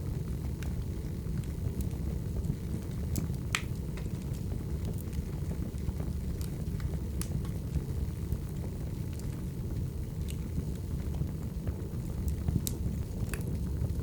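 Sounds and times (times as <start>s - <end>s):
fire crackling and popping: 0.0s - 14.0s
fire rumbling: 0.0s - 14.0s.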